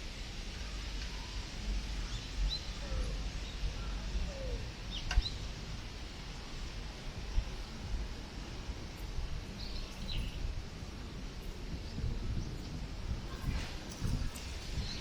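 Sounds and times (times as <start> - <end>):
wind buffeting microphone: 1.7 - 15.0.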